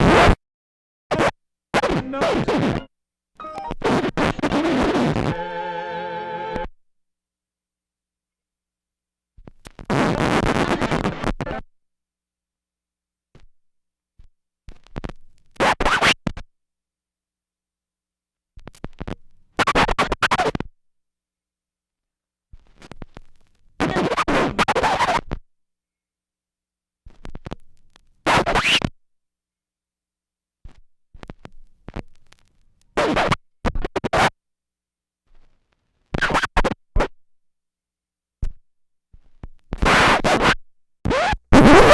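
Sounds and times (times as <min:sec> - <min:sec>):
vinyl record scratching: 0:01.9 - 0:03.8, 0:04.5 - 0:06.6.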